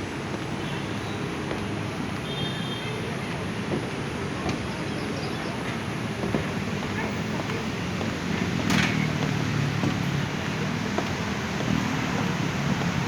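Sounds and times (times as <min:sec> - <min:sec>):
outdoor background noise: 0:00.0 - 0:13.0.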